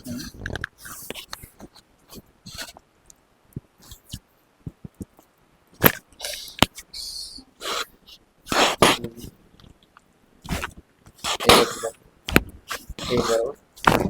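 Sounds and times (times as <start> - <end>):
short breathy bursts: 6.2 - 9.3, 10.5 - 12.0, 12.7 - 13.6.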